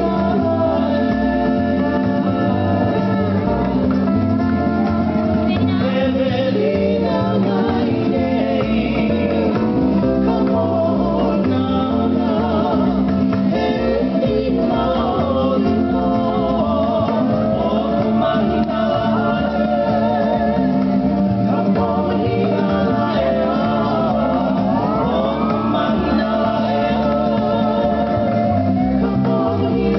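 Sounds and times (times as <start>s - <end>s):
person singing: 0.0s - 29.9s
plucked guitar: 0.0s - 29.9s.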